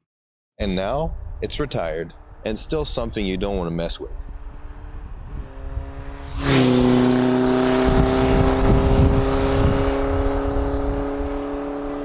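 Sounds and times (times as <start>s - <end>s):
motorcycle engine revving high: 4.2s - 12.0s.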